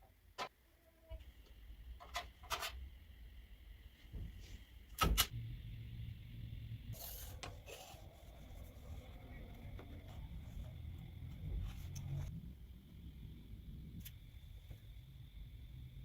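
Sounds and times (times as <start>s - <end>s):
low hum: 5.3s - 16.0s
scraping hiss: 6.9s - 12.4s.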